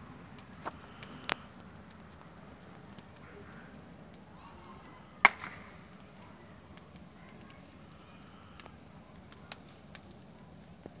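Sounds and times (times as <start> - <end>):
fire pops and snaps: 0.0 - 4.3, 5.2 - 11.0
bonfire crackling: 0.0 - 11.0.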